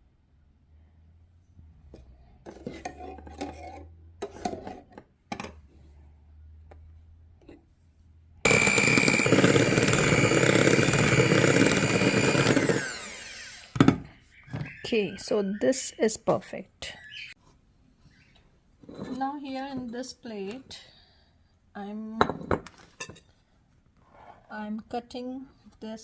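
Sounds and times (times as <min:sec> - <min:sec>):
electric hand mixer whining: 0:08.5 - 0:14.1.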